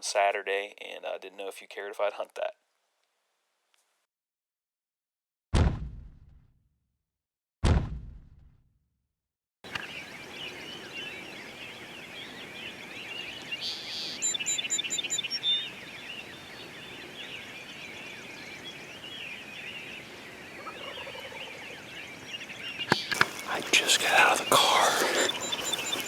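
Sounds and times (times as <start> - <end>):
songbirds chirping: 9.7 - 26.0
turkey gobbling: 20.6 - 21.8, 22.8 - 26.0.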